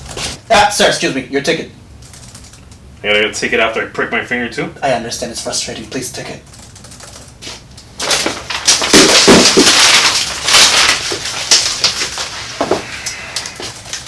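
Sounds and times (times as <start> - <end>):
crinkling handling noise: 7.3 - 14.0.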